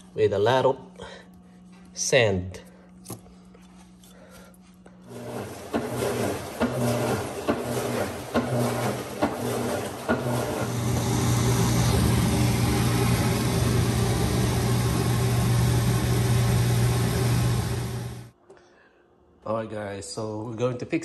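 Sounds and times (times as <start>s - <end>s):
washing machine motor hum: 5.0s - 18.4s.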